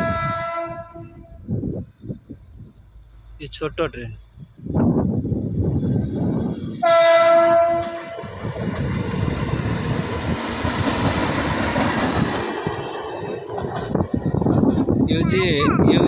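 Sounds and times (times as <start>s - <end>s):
train horn: 0.0s - 1.4s, 6.8s - 8.4s
train wheels rumbling on rails: 1.2s - 16.0s.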